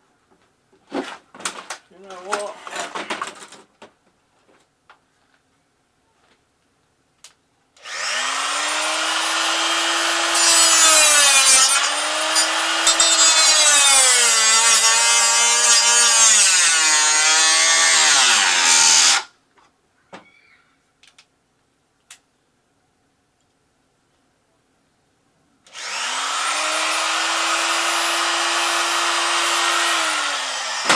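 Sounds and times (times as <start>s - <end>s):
electric cut-off tool grinding: 7.8s - 19.3s, 25.7s - 30.9s.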